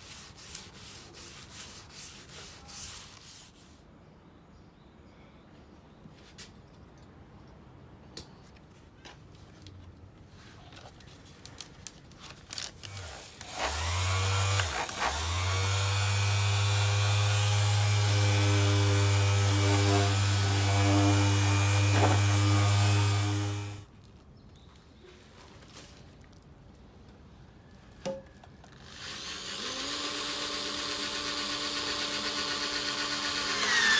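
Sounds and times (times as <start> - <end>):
electric power tool humming: 12.9 - 23.8, 28.9 - 33.9.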